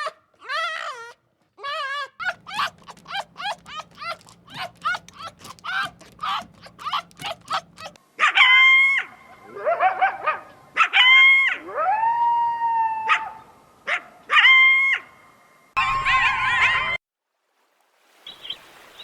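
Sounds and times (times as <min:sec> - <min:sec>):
dog-like animal whining and howling: 0:00.0 - 0:08.0.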